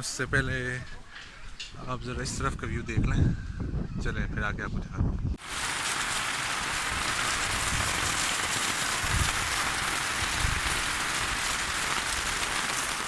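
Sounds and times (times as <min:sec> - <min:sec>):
wind rumble on microphone: 0:01.5 - 0:05.4, 0:06.8 - 0:12.4
heavy rain: 0:05.4 - 0:13.0.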